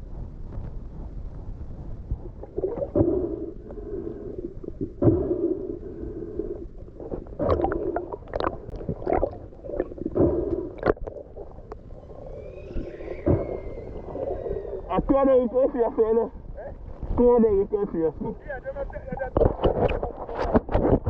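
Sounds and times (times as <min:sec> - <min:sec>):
underwater gurgling and swishing: 0:00.0 - 0:21.0.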